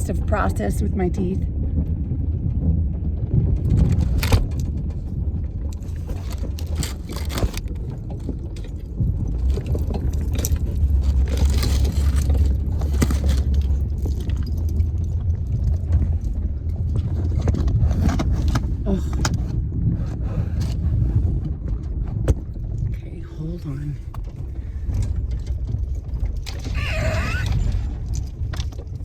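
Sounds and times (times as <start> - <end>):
vehicle rumble inside cabin: 0.0 - 29.0
loose things rattling: 5.7 - 15.1, 24.0 - 29.0.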